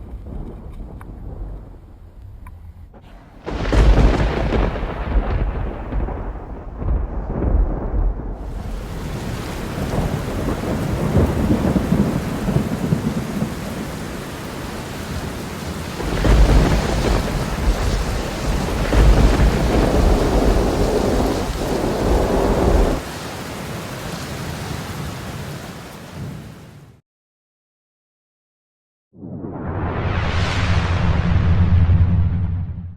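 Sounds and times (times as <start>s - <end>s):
rolling thunder: 0.0s - 23.0s, 29.2s - 32.9s
rain falling: 3.4s - 26.8s.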